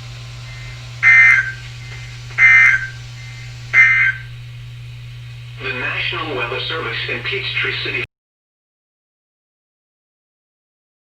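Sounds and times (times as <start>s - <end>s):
steady low hum: 0.0s - 8.1s
warbling digital data tones: 0.4s - 4.6s.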